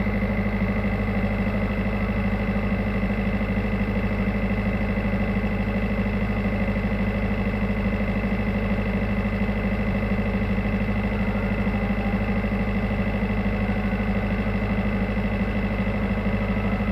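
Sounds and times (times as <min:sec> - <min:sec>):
diesel engine rumbling: 0:00.0 - 0:16.9.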